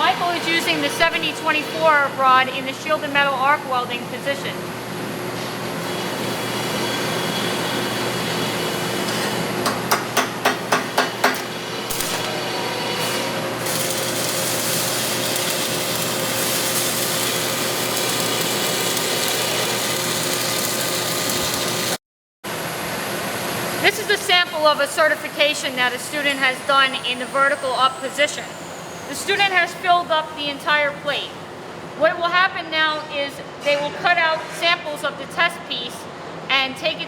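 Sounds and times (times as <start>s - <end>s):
welding arc crackling hiss: 10.8s - 12.7s, 13.6s - 22.0s.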